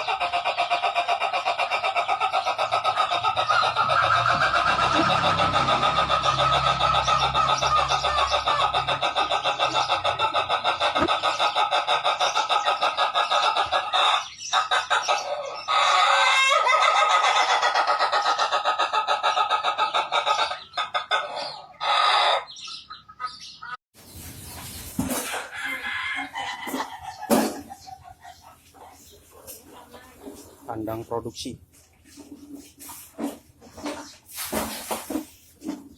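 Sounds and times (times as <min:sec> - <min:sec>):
rooster crowing in stuttering notes: 0:03.6 - 0:09.3.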